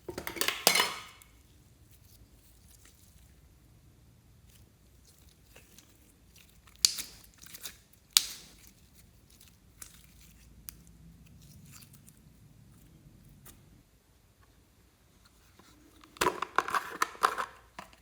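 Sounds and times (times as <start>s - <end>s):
slime being squished by hand: 4.4s - 13.6s.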